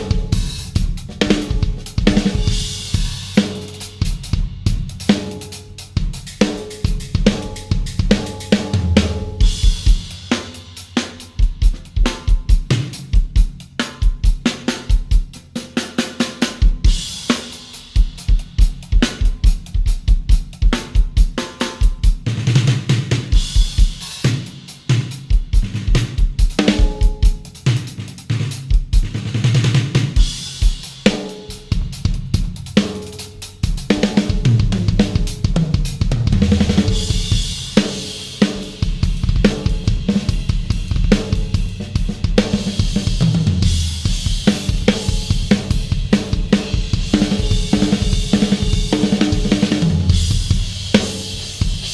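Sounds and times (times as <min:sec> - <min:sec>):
drum kit groove: 0:00.0 - 0:51.9.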